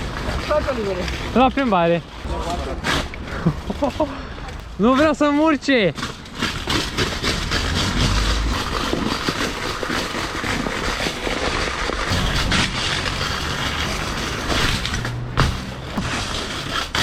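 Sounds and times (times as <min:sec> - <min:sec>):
bare bike rim grinding rattle: 0:04.8 - 0:17.0.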